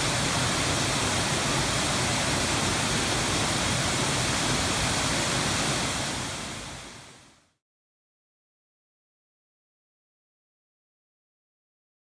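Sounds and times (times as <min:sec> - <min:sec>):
waterfall rushing: 0:00.0 - 0:07.0.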